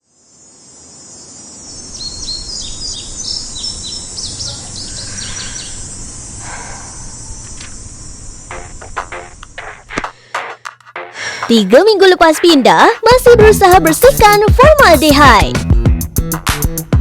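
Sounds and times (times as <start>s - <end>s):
crickets and insects chirring: 0.0s - 10.3s
birds chirping: 1.4s - 9.8s.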